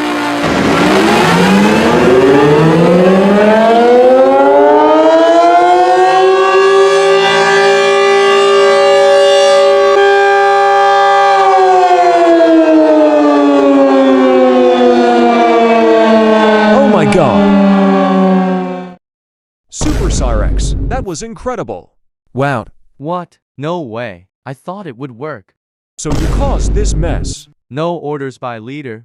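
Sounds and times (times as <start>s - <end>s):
tornado siren wailing: 0.0s - 19.0s.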